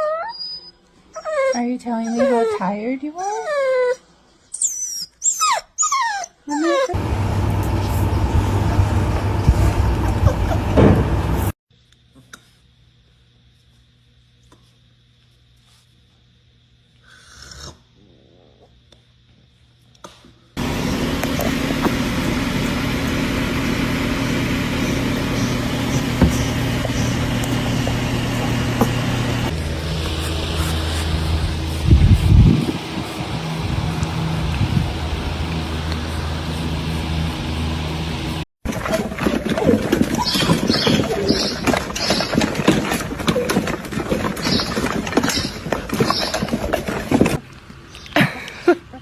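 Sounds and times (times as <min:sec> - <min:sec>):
puppy whimpering: 0:00.0 - 0:04.0, 0:04.6 - 0:07.0
mechanical hum: 0:06.9 - 0:38.9
steady rumbling noise: 0:07.0 - 0:11.5, 0:20.6 - 0:38.5
loud rushing noise: 0:20.6 - 0:38.4.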